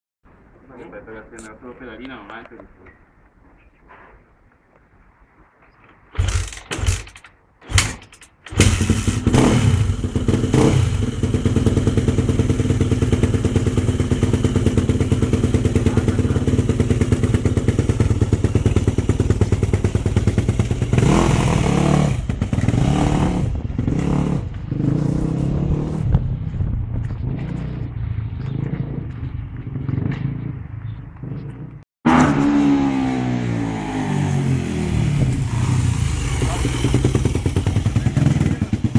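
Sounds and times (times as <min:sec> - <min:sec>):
dirt bike engine kick-started: 0:06.1 - 0:10.3.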